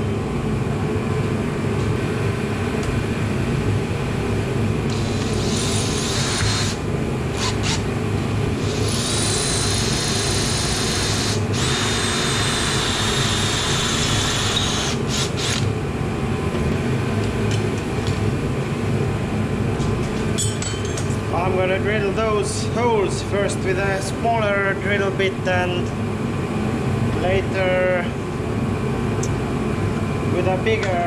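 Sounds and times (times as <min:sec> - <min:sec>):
constant low hum: 0:00.0 - 0:31.0
power tool whining: 0:02.0 - 0:15.8.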